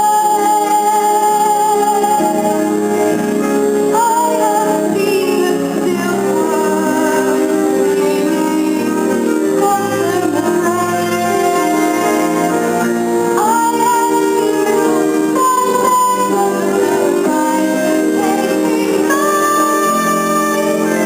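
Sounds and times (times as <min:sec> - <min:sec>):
cast singing musical number: 0:00.0 - 0:21.0
instrumental accompaniment: 0:00.0 - 0:21.0.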